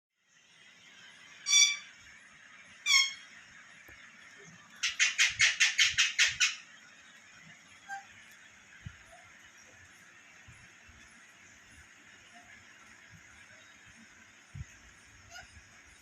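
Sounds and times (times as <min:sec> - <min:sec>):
parrot squawking: 0:01.5 - 0:01.9, 0:02.8 - 0:03.2, 0:04.8 - 0:06.6.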